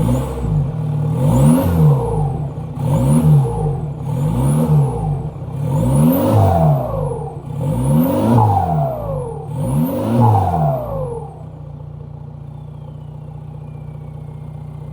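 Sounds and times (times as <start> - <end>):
diesel engine revving: 0.0 - 11.7
engine idling: 10.9 - 14.9
turbo whistle: 12.4 - 14.5.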